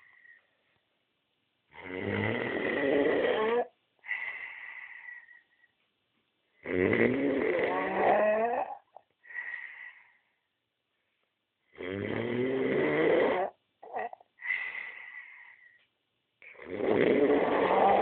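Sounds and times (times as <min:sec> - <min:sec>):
wheezing breaths with thin whistle: 0:00.0 - 0:00.6, 0:04.0 - 0:05.8, 0:09.2 - 0:10.4, 0:14.4 - 0:15.9
person snoring loudly: 0:01.8 - 0:03.7, 0:06.6 - 0:08.9, 0:11.8 - 0:14.2, 0:16.5 - 0:18.0.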